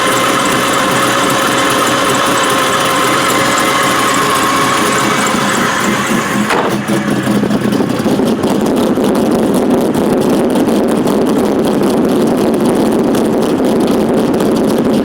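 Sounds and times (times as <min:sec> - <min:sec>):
high whine: 0:00.0 - 0:11.4
engine running with a misfire: 0:00.0 - 0:15.0.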